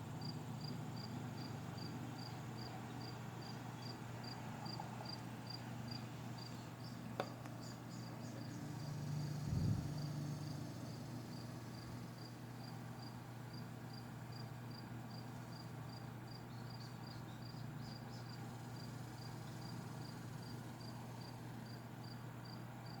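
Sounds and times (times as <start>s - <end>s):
steady low hum: 0.0s - 22.6s
insect chirping: 7.6s - 22.6s.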